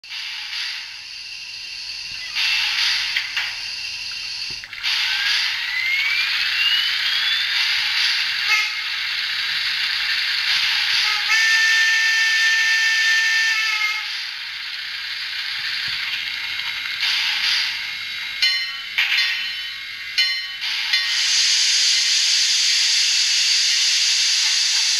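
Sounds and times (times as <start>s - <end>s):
steam hiss with rising whine: 0.1s - 18.5s, 19.4s - 24.9s
long steam whistle blast: 8.4s - 8.9s, 11.0s - 14.2s
steam whistle toot: 8.4s - 8.9s, 11.0s - 14.2s.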